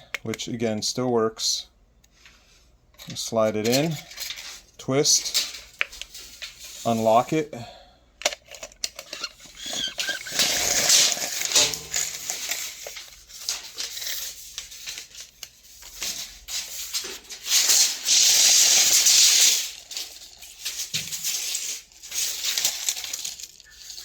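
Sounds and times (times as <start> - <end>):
tape measure clicks and rattles: 3.0 - 7.2, 8.2 - 24.0
tape measure blade rasping: 9.0 - 13.0.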